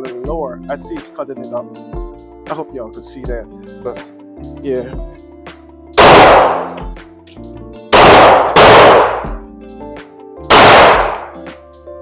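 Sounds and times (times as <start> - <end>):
background music: 0.0 - 12.0
pistol shots: 6.0 - 6.9, 7.9 - 9.4, 10.5 - 11.4.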